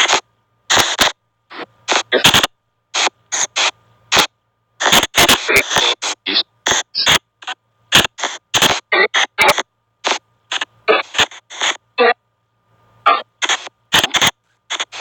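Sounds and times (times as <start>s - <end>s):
bursts of hissing static: 0.0s - 12.2s, 13.0s - 15.0s
garbled voice fragments: 8.0s - 12.2s, 13.1s - 15.0s.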